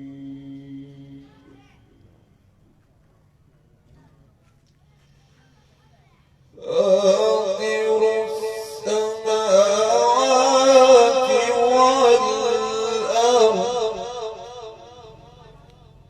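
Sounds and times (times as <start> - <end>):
man chanting melodic recitation: 6.6 - 15.9.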